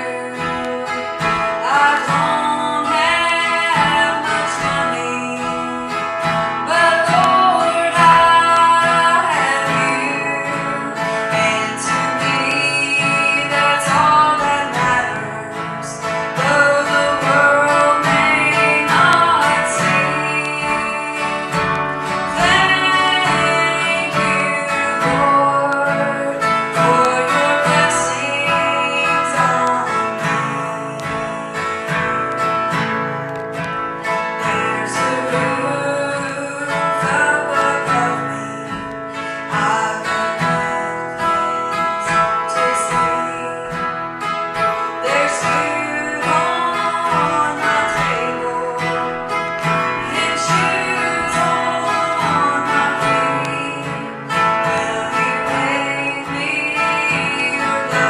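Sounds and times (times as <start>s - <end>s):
strummed acoustic guitar music: 0.0s - 58.0s.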